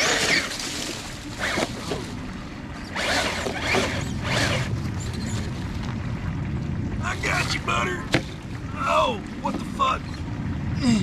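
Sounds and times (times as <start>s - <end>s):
electric motor whirring: 2.8s - 4.8s.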